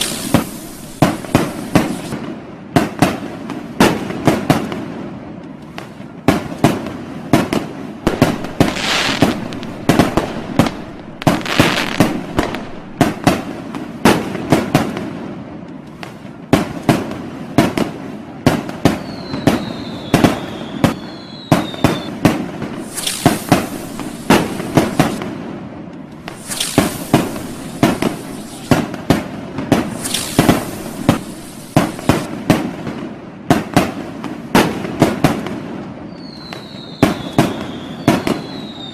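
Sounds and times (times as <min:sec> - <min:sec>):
firework whistle: 0:00.0 - 0:02.2, 0:08.1 - 0:13.7, 0:18.8 - 0:25.3, 0:26.2 - 0:32.4, 0:36.0 - 0:38.9
hissing crackle: 0:00.0 - 0:02.2, 0:08.0 - 0:13.8, 0:19.5 - 0:25.4, 0:26.0 - 0:32.4
firecrackers banging: 0:00.0 - 0:04.7, 0:06.3 - 0:15.1, 0:18.5 - 0:35.5.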